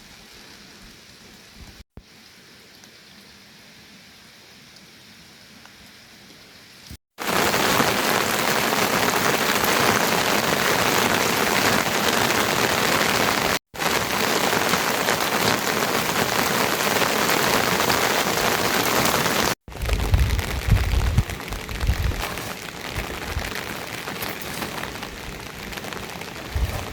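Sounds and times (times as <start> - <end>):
heavy rain pouring: 7.2 - 26.9.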